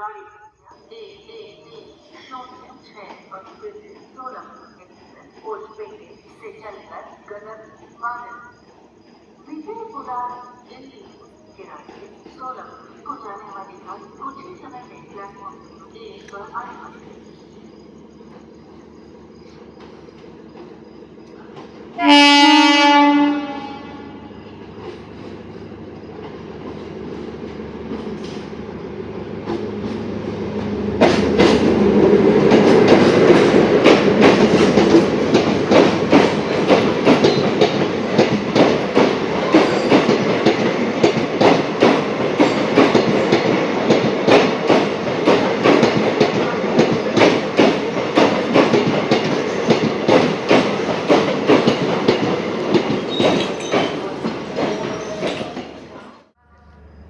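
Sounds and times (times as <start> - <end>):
train rumbling: 0.0 - 57.0
train wheels clattering on rails: 1.6 - 56.4
train horn blast: 22.0 - 24.4.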